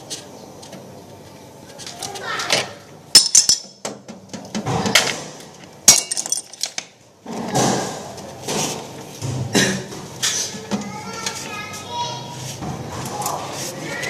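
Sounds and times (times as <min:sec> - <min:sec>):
rustling handling noise: 0:10.0 - 0:14.0.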